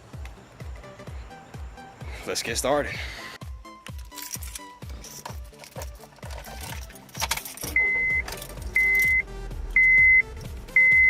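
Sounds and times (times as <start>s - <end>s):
background music with steady beat: 0.0s - 11.0s
keys rattling: 3.6s - 9.2s
car warning chime beeping: 7.7s - 11.0s.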